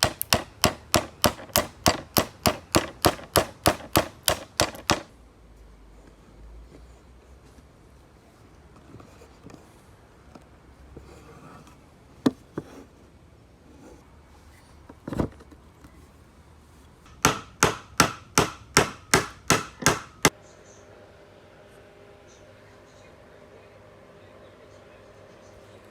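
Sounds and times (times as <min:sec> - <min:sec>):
even hammer blows on wood: 0:00.0 - 0:05.1, 0:17.1 - 0:20.3
wood knocking: 0:00.0 - 0:05.1, 0:17.1 - 0:20.3.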